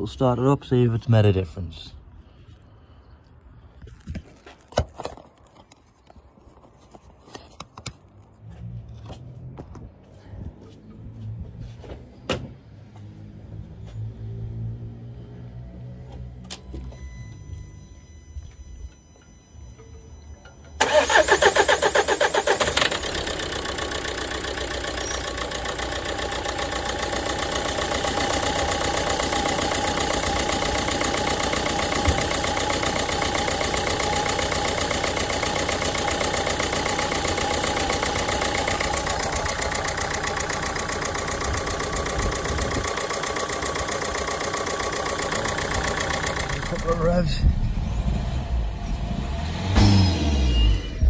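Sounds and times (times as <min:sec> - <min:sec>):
diesel engine starting and idling: 0:20.6 - 0:51.0.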